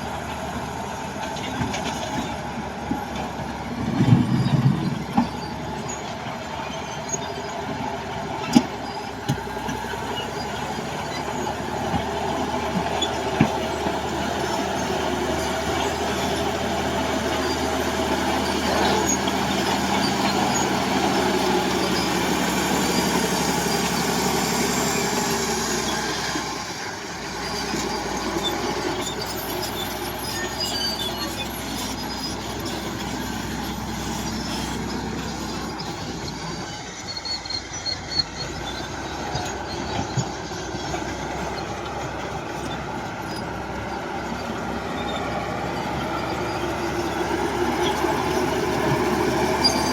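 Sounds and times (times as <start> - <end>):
diesel engine under load: 0.0 - 49.9
steel tracks squealing and clanking: 0.0 - 49.9.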